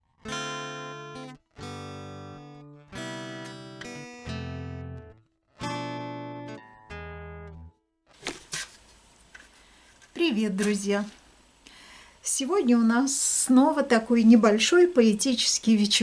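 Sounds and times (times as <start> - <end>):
acoustic guitar chords: 0.2 - 7.6.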